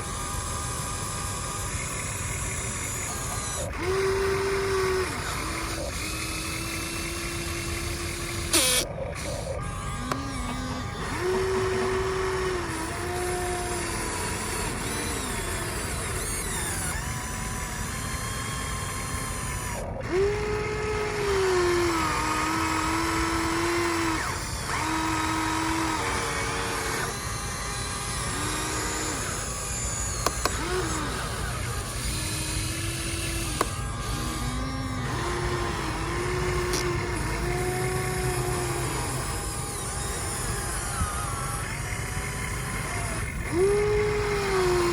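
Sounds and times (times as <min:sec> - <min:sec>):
electric motors whining: 0:00.0 - 0:44.9.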